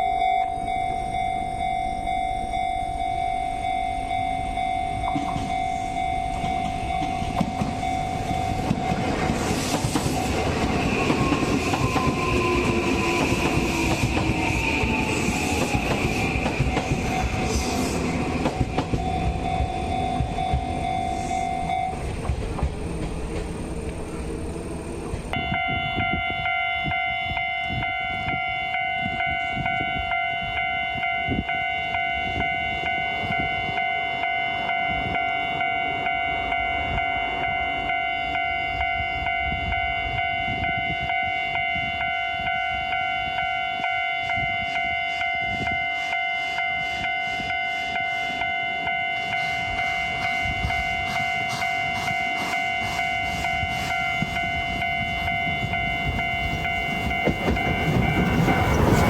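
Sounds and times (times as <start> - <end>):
level-crossing warning bell: 0.0 - 59.0
train rumbling past: 0.0 - 59.0.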